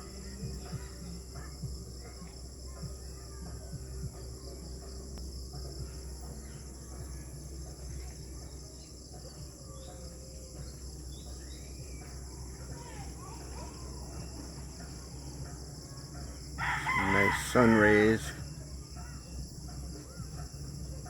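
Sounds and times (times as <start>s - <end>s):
crickets and insects chirping: 0.0s - 21.0s
faint bird calls: 5.8s - 21.0s.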